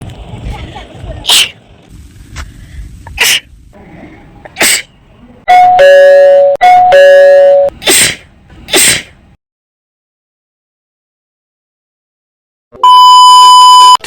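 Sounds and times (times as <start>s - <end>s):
person sneezing: 0.6s - 1.6s, 3.2s - 3.5s, 4.6s - 4.9s, 7.7s - 9.2s
two-note doorbell chime: 5.5s - 7.7s.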